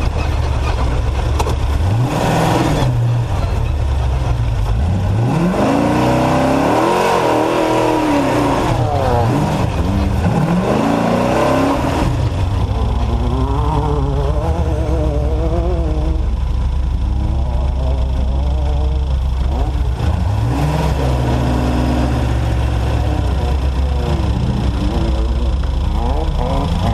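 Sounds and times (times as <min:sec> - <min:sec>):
truck engine revving: 0:00.0 - 0:26.9.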